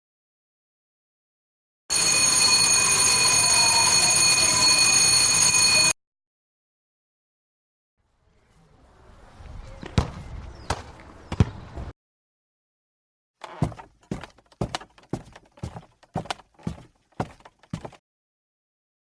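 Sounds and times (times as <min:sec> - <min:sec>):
horse hooves clip-clopping: 0:13.6 - 0:18.0.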